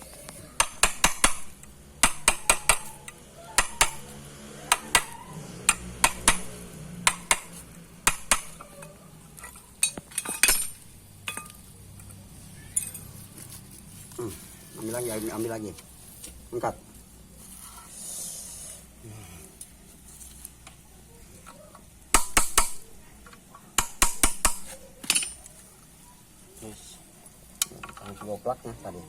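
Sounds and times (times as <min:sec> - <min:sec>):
metal tools clinking: 0:08.6 - 0:13.5, 0:24.6 - 0:25.6.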